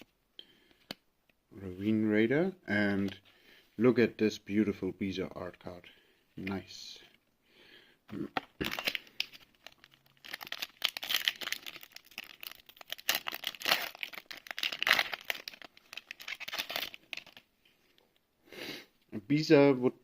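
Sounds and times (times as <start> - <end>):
foil wrapper crinkling and tearing: 8.6 - 17.5.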